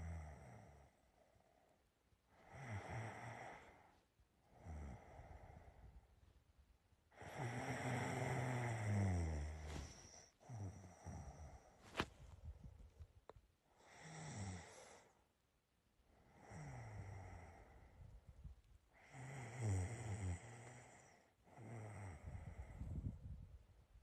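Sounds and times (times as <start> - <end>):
person snoring: 4.5 - 5.8, 7.2 - 11.7, 13.8 - 15.1, 16.3 - 17.8, 19.0 - 22.8.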